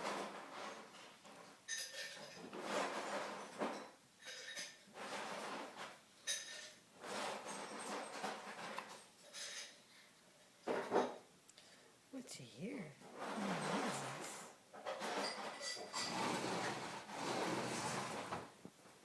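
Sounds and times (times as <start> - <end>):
dishes clinking: 1.7 - 2.6, 3.2 - 4.9, 6.2 - 9.8, 14.8 - 16.8.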